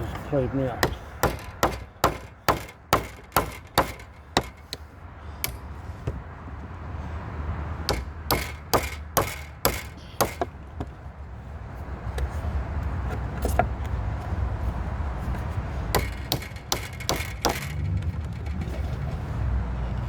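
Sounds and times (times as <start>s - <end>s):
hand tool chopping wood: 0.8s - 6.2s, 7.9s - 10.9s, 15.9s - 18.4s.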